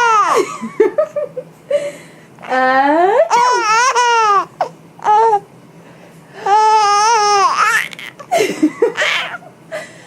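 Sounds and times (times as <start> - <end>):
baby squealing and babbling: 3.3 - 5.4, 6.5 - 8.2.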